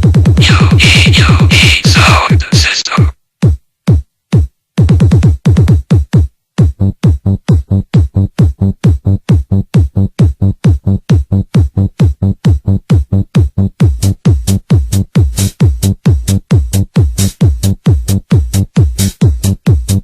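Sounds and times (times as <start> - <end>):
heavy booming kick drum: 0.0 - 2.3, 3.4 - 20.0
electronic dance music: 0.0 - 3.2.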